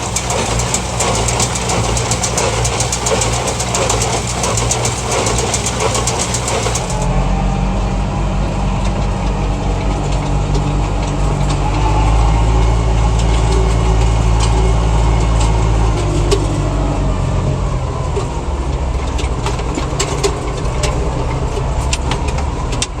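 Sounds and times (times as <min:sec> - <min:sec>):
baler machinery clicks: 0:00.0 - 0:07.1
tractor diesel engine running: 0:00.0 - 0:23.0.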